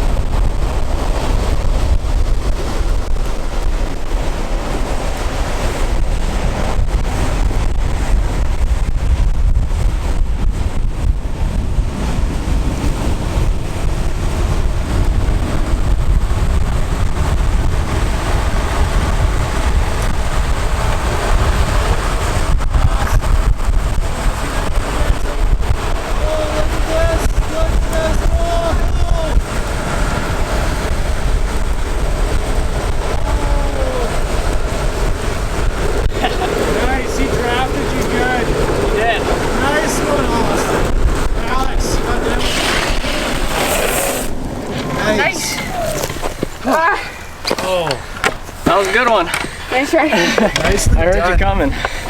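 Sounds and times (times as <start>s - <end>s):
longboard wheels rolling on asphalt: 0.0s - 52.0s
wind buffeting microphone: 0.0s - 52.0s.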